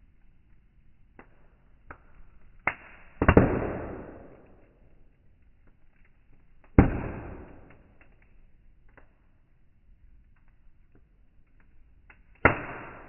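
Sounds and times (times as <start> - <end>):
burning firewood crackling: 0.0 - 13.0
loud sharp pops of firewood: 1.1 - 5.0, 5.6 - 9.3, 12.1 - 13.0.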